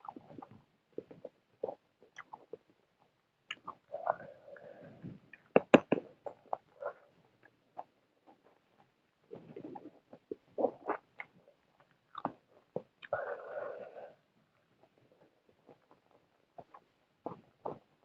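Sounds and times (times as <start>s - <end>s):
wet chewing: 0.0s - 4.3s.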